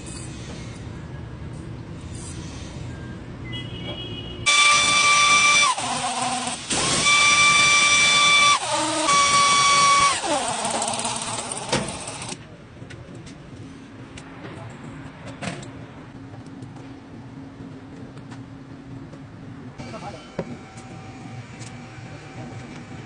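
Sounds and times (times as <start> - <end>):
power tool whining: 4.5 - 12.4.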